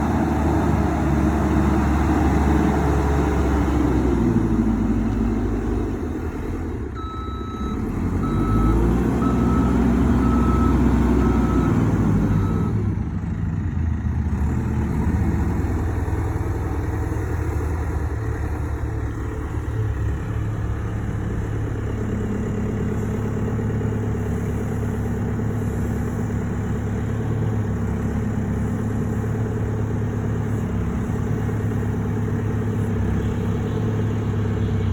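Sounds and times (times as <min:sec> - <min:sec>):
diesel engine revving: 0:00.0 - 0:34.9
reversing alarm beeping: 0:07.0 - 0:12.8.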